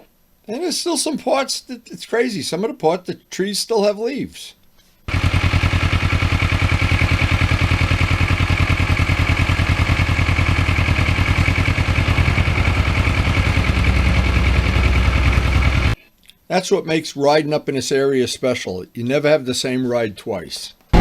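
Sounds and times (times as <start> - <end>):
motorcycle engine running: 5.1 - 16.0.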